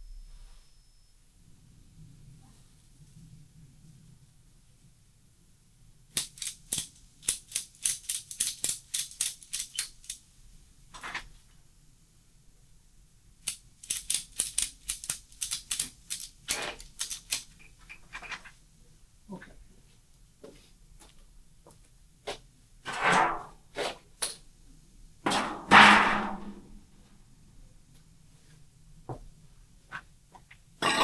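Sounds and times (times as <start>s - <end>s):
ratchet wrench clicking: 6.2s - 10.2s, 13.4s - 17.6s.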